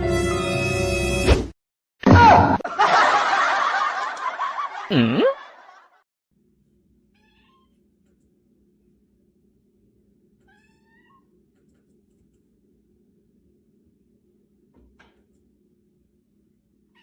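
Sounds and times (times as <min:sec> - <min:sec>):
laughter: 0:02.6 - 0:06.0.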